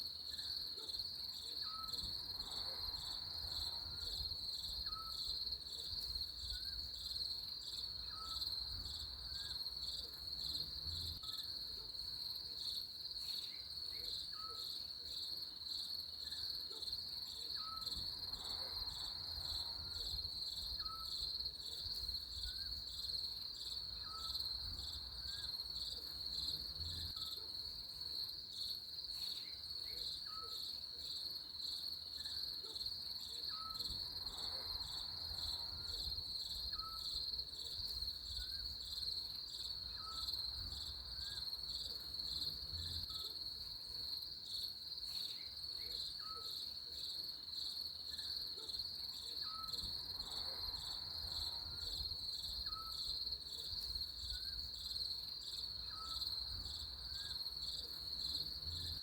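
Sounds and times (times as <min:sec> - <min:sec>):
crickets trilling: 0:49.4 - 0:59.0.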